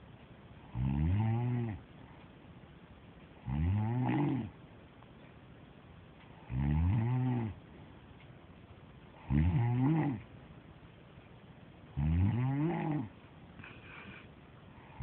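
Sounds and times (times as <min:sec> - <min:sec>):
woman snoring: 0:00.8 - 0:01.8, 0:12.0 - 0:13.1
quiet breathing: 0:12.3 - 0:15.0.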